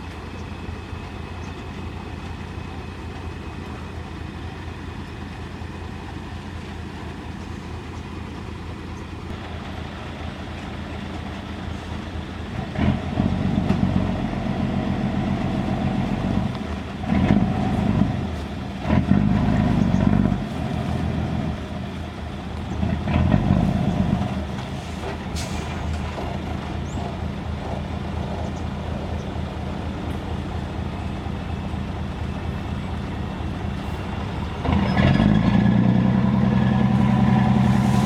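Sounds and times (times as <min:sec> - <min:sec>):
diesel engine idling and revving: 0:00.0 - 0:38.0.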